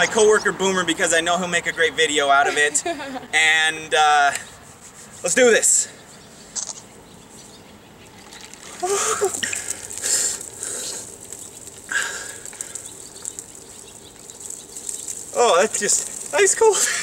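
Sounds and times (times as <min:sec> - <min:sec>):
water splashing: 0:08.0 - 0:17.0
person crying out: 0:08.8 - 0:09.4.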